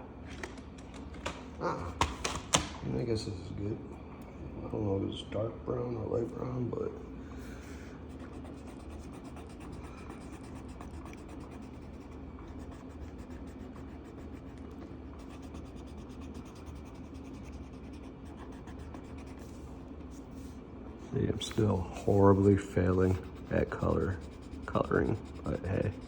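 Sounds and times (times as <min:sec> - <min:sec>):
marker scratching on paper: 0:08.0 - 0:20.6, 0:21.4 - 0:26.0.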